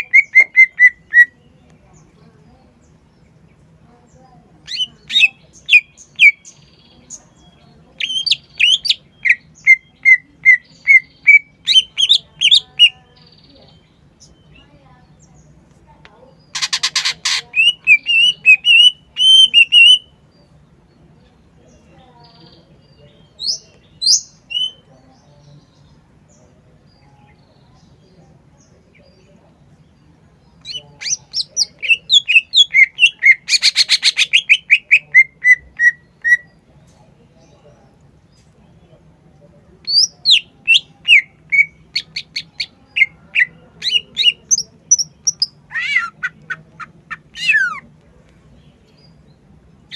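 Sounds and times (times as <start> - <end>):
bird singing whistled trills: 17.6 - 20.1, 23.4 - 24.9.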